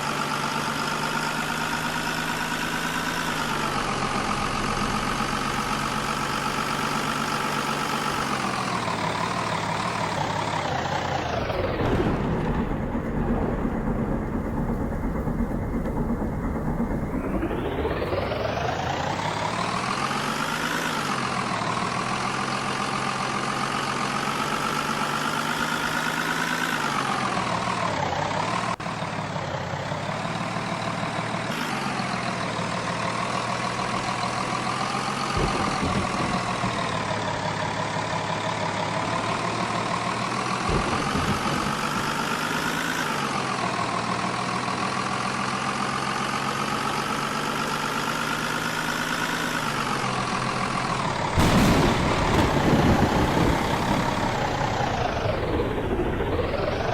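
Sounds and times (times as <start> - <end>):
vehicle engine running: 0.0 - 56.9
low thumps: 11.6 - 17.6, 35.3 - 42.6, 50.1 - 55.0.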